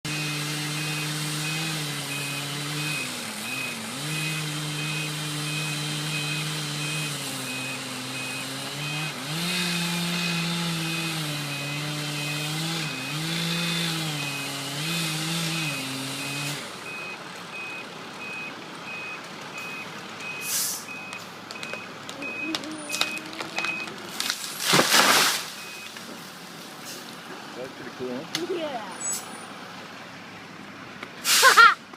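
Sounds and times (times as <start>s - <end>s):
vehicle engine running: 0.0s - 24.6s
truck reversing alarm beeping: 0.1s - 24.0s, 25.5s - 26.0s
short hiss: 20.4s - 20.9s, 31.2s - 31.7s.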